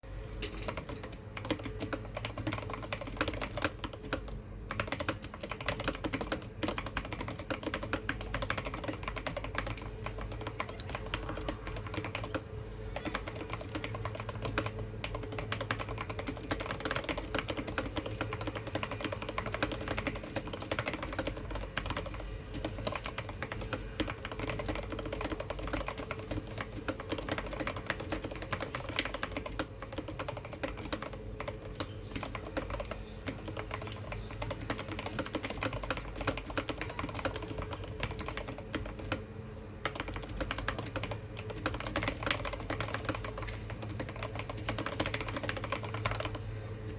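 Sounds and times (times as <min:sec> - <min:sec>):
fast mechanical keyboard typing: 0:00.2 - 0:46.9.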